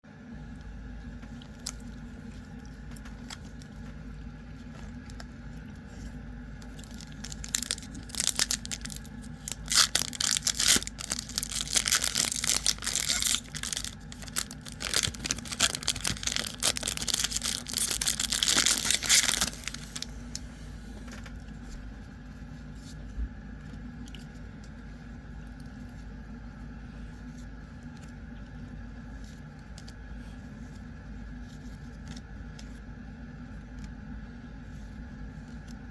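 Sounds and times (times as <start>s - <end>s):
steady low hum: 0.0s - 35.9s
foil wrapper crinkling and ripping: 5.9s - 20.4s.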